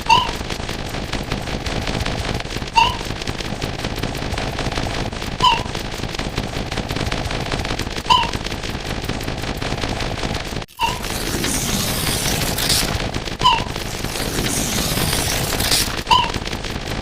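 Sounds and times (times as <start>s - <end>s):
dense crackle of rapid clicks: 0.0s - 17.0s
high yelp-like call: 5.4s - 5.7s.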